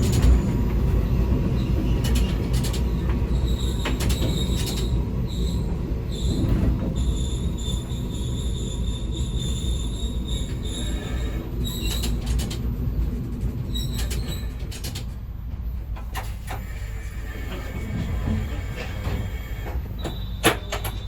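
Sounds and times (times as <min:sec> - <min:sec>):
wheels squealing on rails: 0:00.0 - 0:13.0, 0:13.6 - 0:15.2, 0:16.2 - 0:21.0
diesel railcar rumble: 0:00.0 - 0:21.0.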